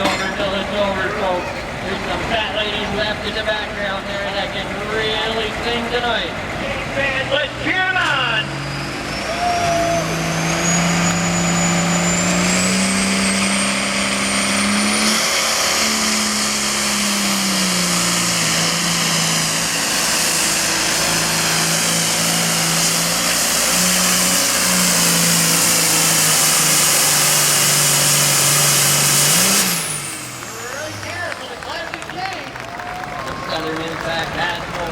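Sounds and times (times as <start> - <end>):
diesel engine at full power: 0.0 - 34.9
high turbo whistle: 8.6 - 15.2.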